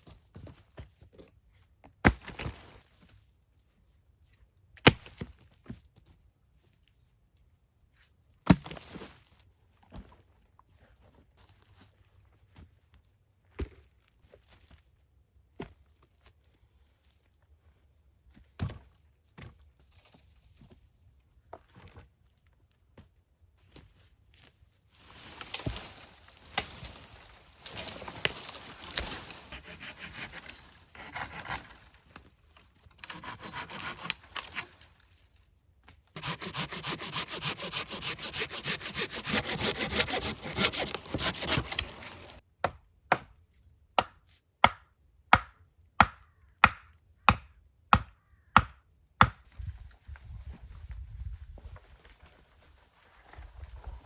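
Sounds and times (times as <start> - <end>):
hand saw cutting wood: 28.9 - 31.8, 33.0 - 34.8, 36.2 - 42.4.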